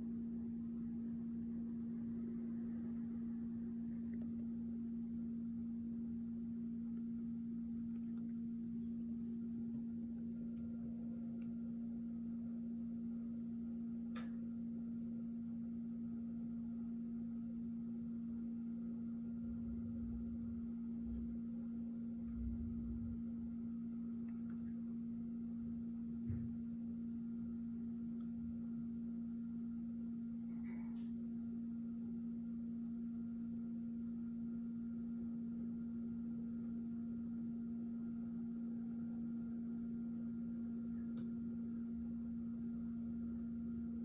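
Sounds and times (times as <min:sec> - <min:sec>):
low electrical hum: 0:00.0 - 0:44.0
soft low rumbles: 0:19.3 - 0:28.8.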